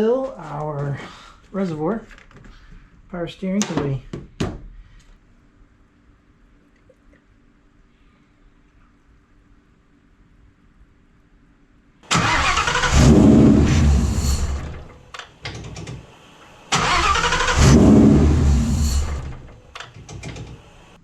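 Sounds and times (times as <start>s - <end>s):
car engine starting and stalling: 12.1s - 21.0s.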